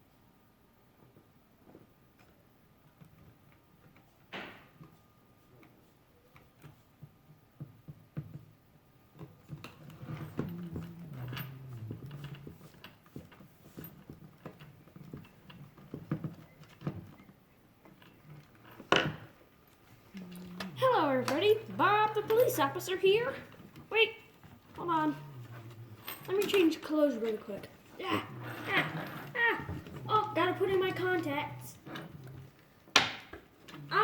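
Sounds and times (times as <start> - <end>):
low wavering murmur: 10.3 - 12.8, 24.8 - 26.6.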